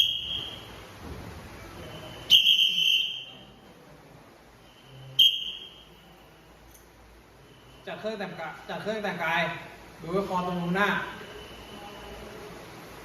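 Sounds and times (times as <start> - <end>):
whistle blasts: 0.0 - 0.8, 1.8 - 3.5, 4.6 - 6.4.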